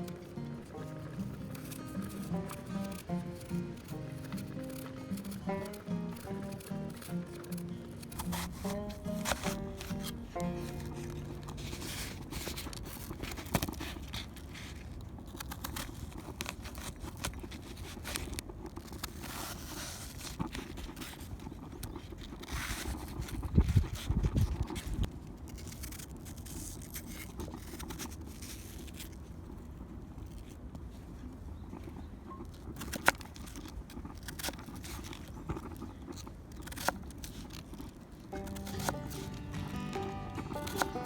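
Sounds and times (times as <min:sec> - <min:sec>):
small clicks and rustles: 0:12.1 - 0:38.1
wind rumbling on microphone: 0:23.1 - 0:25.1.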